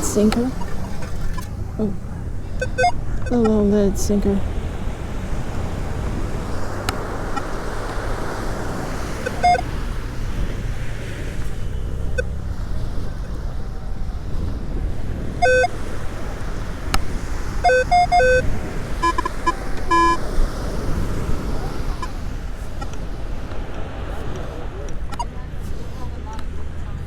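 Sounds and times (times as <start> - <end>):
metal detector beeps: 0.0 - 4.3, 9.2 - 9.7, 12.1 - 12.4, 15.4 - 15.8, 17.6 - 20.2, 25.1 - 25.4
surf: 0.0 - 27.0
wind noise on microphone: 0.0 - 27.0.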